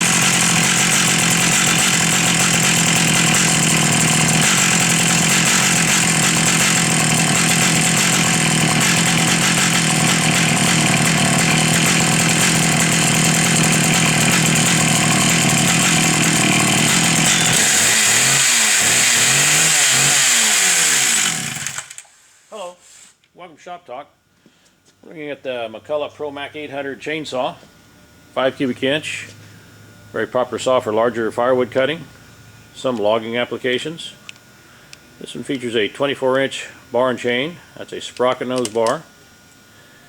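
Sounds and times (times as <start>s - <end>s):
chainsaw running and revving: 0.0s - 22.1s.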